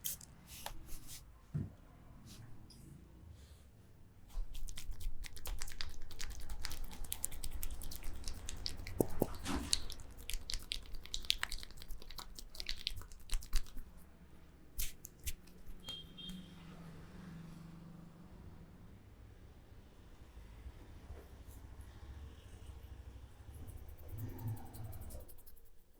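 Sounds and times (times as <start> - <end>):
hands rubbing hair and skin: 4.3 - 14.0, 14.8 - 16.0.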